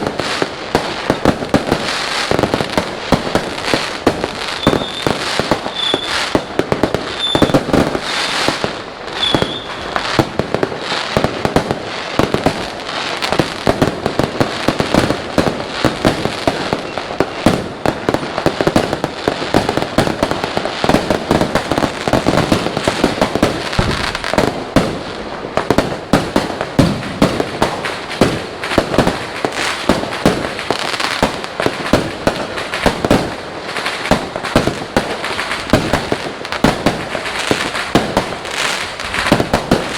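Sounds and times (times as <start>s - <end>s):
fireworks bangs and crackling: 0.0s - 39.9s
firework whistles: 4.4s - 10.3s.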